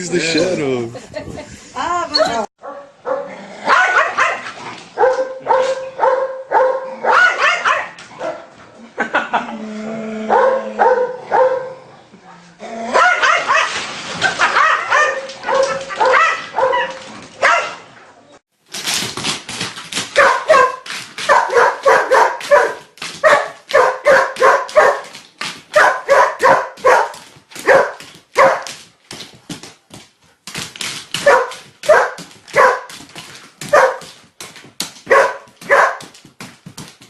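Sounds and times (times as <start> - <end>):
dog barking: 2.6 - 8.5, 10.3 - 11.8, 12.9 - 13.8, 14.4 - 17.8, 20.2 - 25.1, 25.7 - 28.7, 31.2 - 32.9, 33.6 - 34.1, 35.1 - 36.1.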